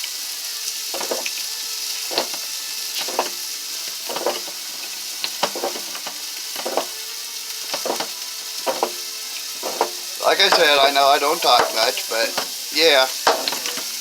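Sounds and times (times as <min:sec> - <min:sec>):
hand-cranked meat grinder grinding: 0:01.0 - 0:01.3, 0:02.1 - 0:02.4, 0:03.0 - 0:03.4, 0:04.1 - 0:04.6, 0:05.3 - 0:06.9, 0:07.7 - 0:09.0, 0:09.6 - 0:10.6, 0:13.2 - 0:14.0.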